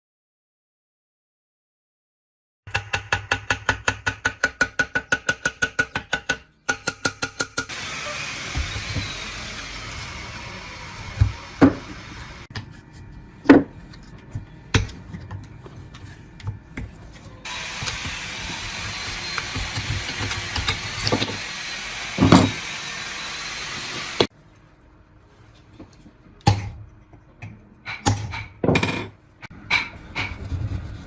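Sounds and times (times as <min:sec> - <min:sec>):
hand tools knocking and scraping: 0:02.7 - 0:12.6, 0:17.5 - 0:22.9, 0:27.8 - 0:31.0.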